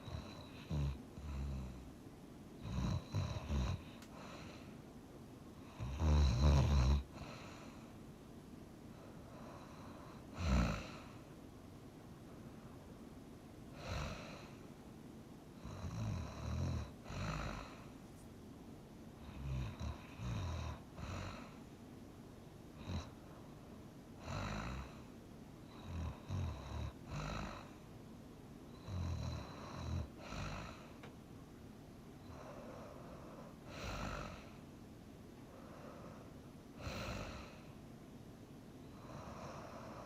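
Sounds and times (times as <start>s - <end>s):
person snoring: 2.6s - 4.7s, 5.6s - 7.8s, 9.5s - 11.2s, 13.8s - 14.6s, 15.6s - 17.9s, 19.2s - 21.6s, 24.2s - 25.1s, 25.7s - 27.8s, 28.8s - 31.0s, 32.2s - 34.6s, 36.8s - 37.7s.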